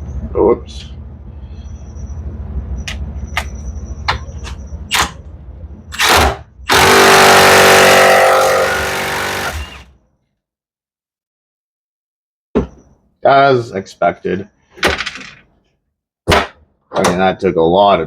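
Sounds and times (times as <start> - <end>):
impact wrench hammering: 6.0 - 9.9.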